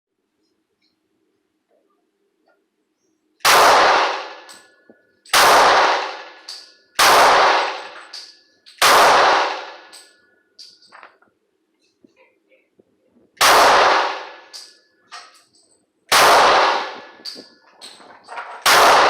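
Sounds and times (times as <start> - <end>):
pistol shots: 3.4 - 4.7, 5.3 - 10.0, 13.4 - 14.7, 16.1 - 17.4, 18.6 - 19.0.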